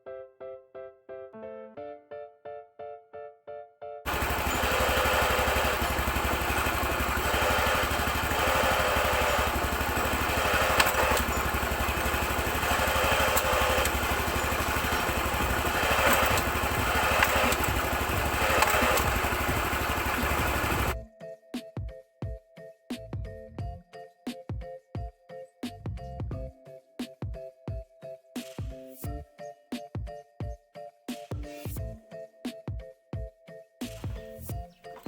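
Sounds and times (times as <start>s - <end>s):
motorcycle engine running: 4.1s - 21.0s
sharp clicks: 4.1s - 21.0s.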